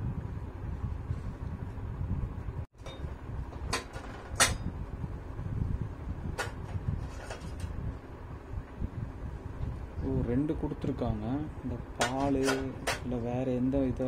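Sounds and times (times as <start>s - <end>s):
low background rumble: 0.0s - 14.0s
gas stove parts clicking: 3.6s - 4.7s, 12.0s - 13.2s.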